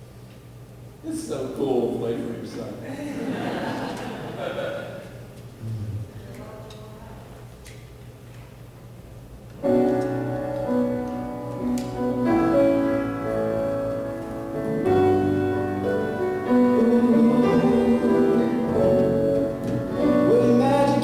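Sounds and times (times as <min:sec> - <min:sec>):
sustained piano chords: 0:09.6 - 0:21.0.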